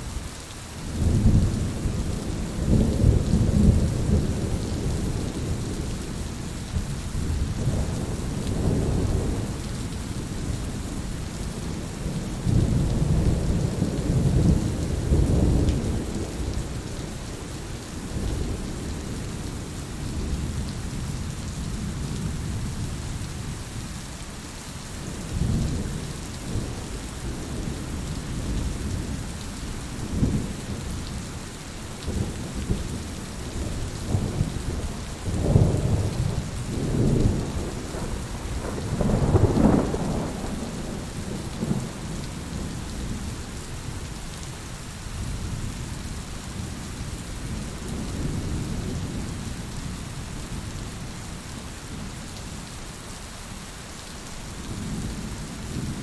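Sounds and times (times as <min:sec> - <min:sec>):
steady rain falling: 0:00.0 - 0:56.0
rolling thunder: 0:33.8 - 0:43.3.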